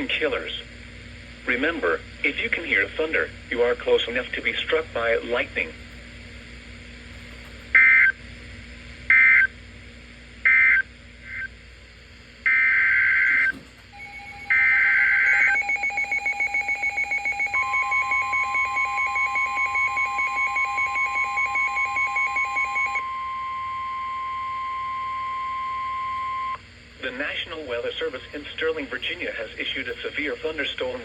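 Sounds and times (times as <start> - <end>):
rapid pulsing beep: 14.0 - 26.6.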